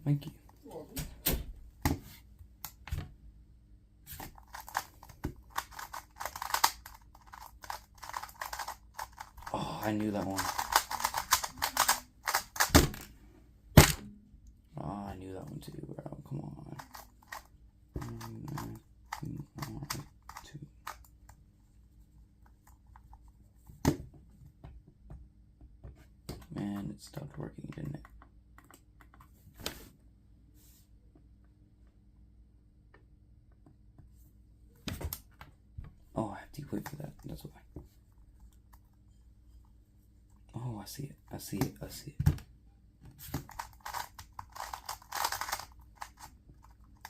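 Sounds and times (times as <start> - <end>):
puzzle cube plastic clicking: 4.4 - 9.5, 10.2 - 12.8, 43.3 - 47.0.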